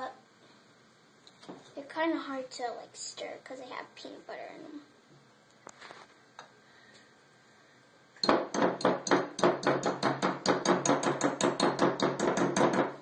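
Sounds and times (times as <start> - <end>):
utensil knocking against a bowl: 8.2 - 12.9.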